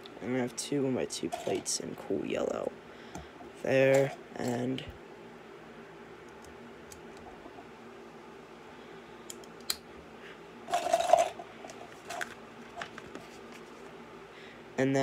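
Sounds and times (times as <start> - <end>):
low steady hum: 0.0 - 15.0
plastic bricks clicking and clattering: 10.7 - 11.4.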